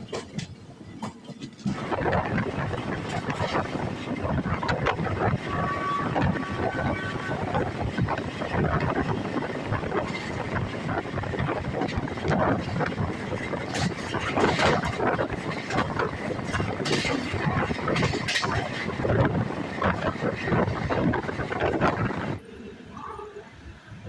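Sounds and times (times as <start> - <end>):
train rumble and air rush: 0.0 - 24.0.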